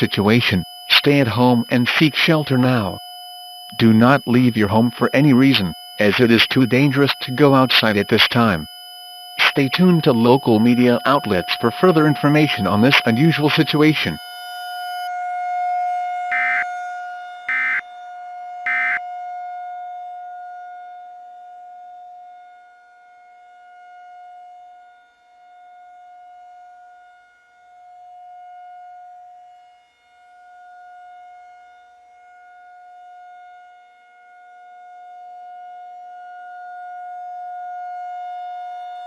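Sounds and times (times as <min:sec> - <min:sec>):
data tone bursts: 0:00.0 - 0:03.0, 0:03.7 - 0:14.6, 0:16.3 - 0:16.6, 0:17.5 - 0:17.8, 0:18.7 - 0:19.0
steady civil defense siren: 0:02.9 - 0:03.8, 0:08.6 - 0:39.0.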